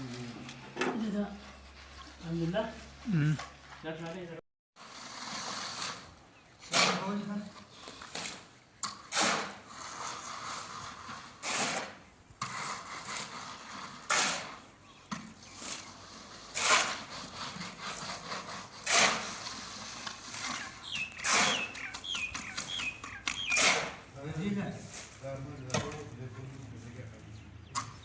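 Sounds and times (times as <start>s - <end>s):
scraping strokes: 4.8s - 14.7s, 15.4s - 27.1s.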